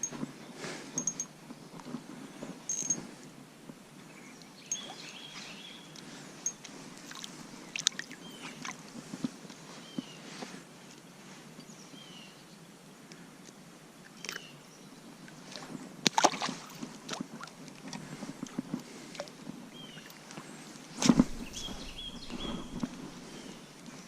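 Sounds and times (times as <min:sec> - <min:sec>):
handling clicks and rustles: 0:00.0 - 0:03.2, 0:19.5 - 0:24.0
bird chirping: 0:04.1 - 0:06.0, 0:21.2 - 0:23.8
creek flowing: 0:21.0 - 0:23.8.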